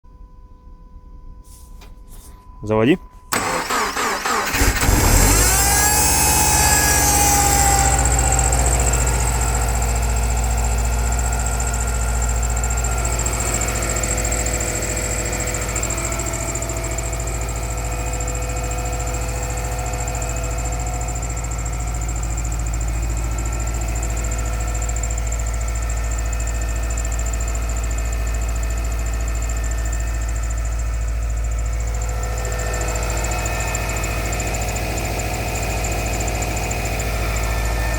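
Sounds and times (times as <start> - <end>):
car engine idling with knock: 5.3 - 37.9.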